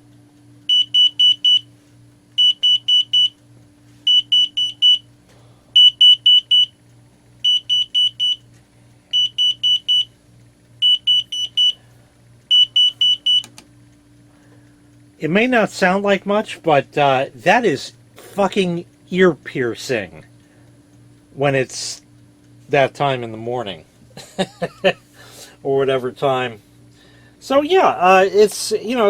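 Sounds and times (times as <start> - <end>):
alarm clock click: 0.6 - 1.6, 2.4 - 3.4, 4.1 - 5.0, 7.4 - 8.4, 10.8 - 11.8
high-pitched alarm clock beeps: 0.6 - 1.7, 2.4 - 3.4, 4.0 - 5.1, 5.8 - 6.8, 7.4 - 8.4, 9.1 - 10.2, 10.8 - 11.8, 12.5 - 13.5.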